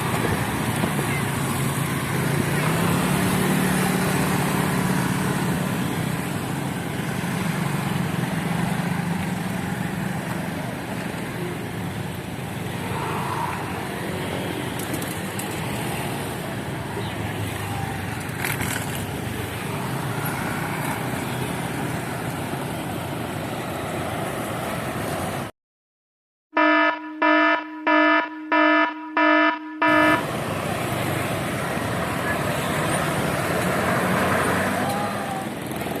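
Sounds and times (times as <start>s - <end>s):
road vehicle noise: 0.0s - 25.6s, 26.6s - 36.0s
short horn toots: 26.6s - 30.3s.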